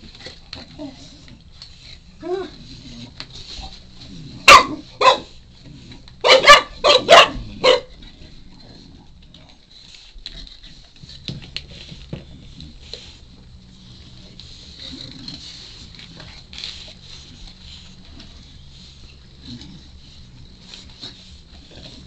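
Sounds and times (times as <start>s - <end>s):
puppy barking: 4.5s - 5.3s, 6.2s - 7.9s.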